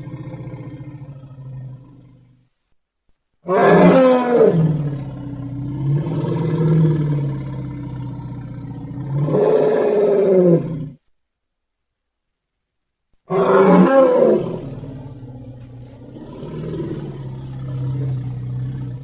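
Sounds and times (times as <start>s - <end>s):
deep animal call: 13.3s - 19.0s.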